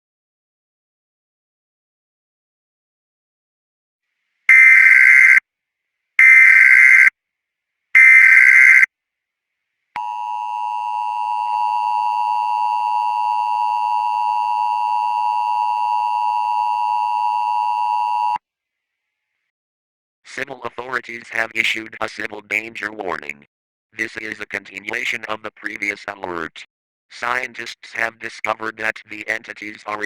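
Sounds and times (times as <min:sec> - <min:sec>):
header data tones: 0:04.5 - 0:05.4, 0:06.2 - 0:07.1, 0:08.0 - 0:08.9
two-tone attention signal: 0:04.5 - 0:05.4, 0:06.2 - 0:07.1, 0:08.0 - 0:08.8.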